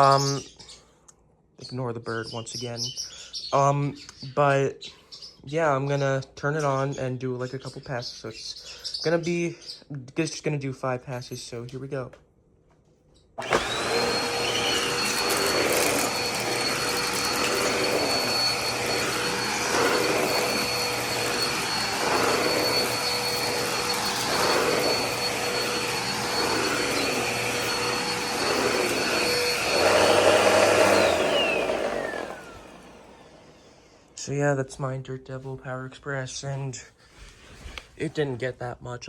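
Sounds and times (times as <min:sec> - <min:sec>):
vacuum cleaner motor whine: 0:13.4 - 0:34.2
vacuum motor spinning down: 0:13.4 - 0:34.2.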